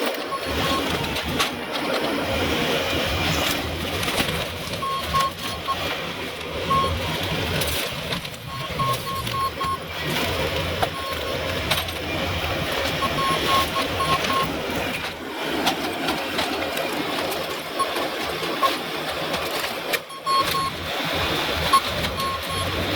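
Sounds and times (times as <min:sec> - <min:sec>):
mechanical clattering: 0:00.0 - 0:22.9
high-pitched electronic beeps: 0:00.2 - 0:01.2, 0:04.7 - 0:05.9, 0:06.7 - 0:07.5, 0:08.4 - 0:10.1, 0:10.8 - 0:11.5, 0:13.0 - 0:14.5, 0:20.1 - 0:20.8, 0:21.7 - 0:22.9.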